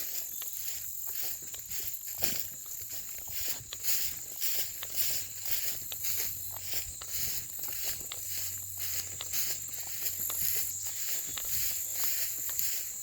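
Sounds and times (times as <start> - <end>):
footsteps walking: 0.0 - 13.0
insects trilling: 0.0 - 13.0.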